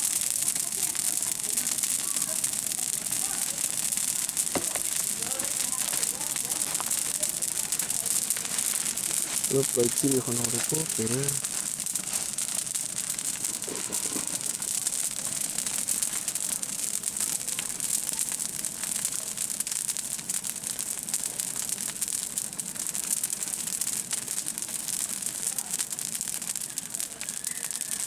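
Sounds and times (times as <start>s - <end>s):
dry stalks rustling and crackling: 0.0s - 28.0s
high-pitched hiss: 4.5s - 14.8s.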